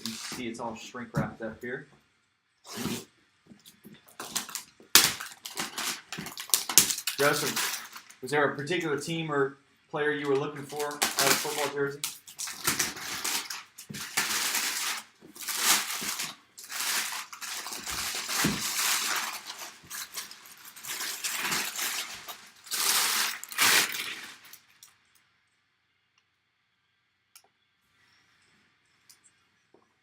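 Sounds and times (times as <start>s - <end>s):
plastic wrap crinkling and tearing: 0.0s - 0.4s, 2.7s - 3.0s, 3.6s - 8.3s, 10.3s - 25.0s.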